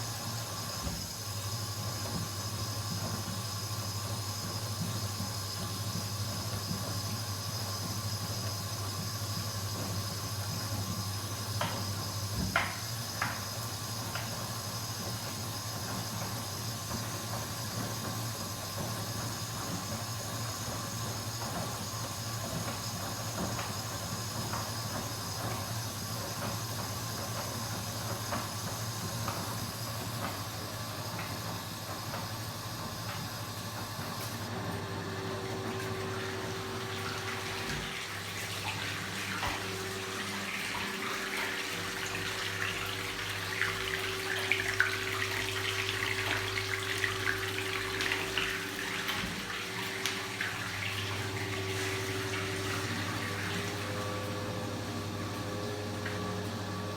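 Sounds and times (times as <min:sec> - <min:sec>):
washing machine humming: 0:00.0 - 0:56.9
water rushing into drum: 0:35.2 - 0:56.9.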